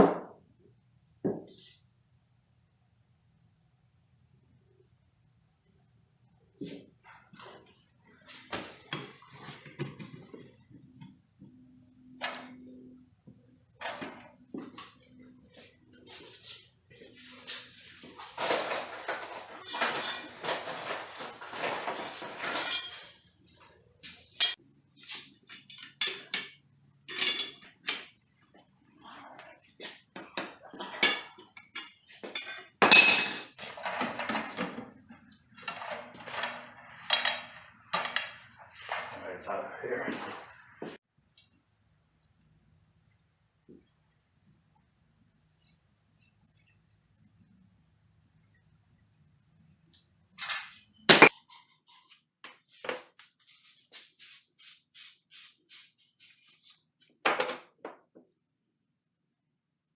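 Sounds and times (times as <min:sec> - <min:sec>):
metal parts clinking: 0:32.8 - 0:33.6.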